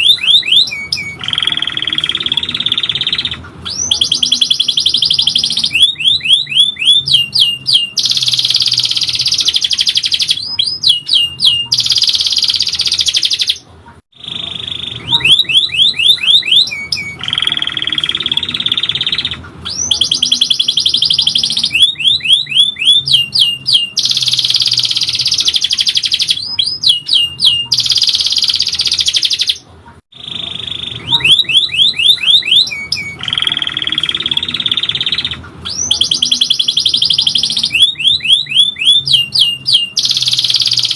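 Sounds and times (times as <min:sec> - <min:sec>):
canary singing trills and chirps: 0:00.0 - 0:40.9.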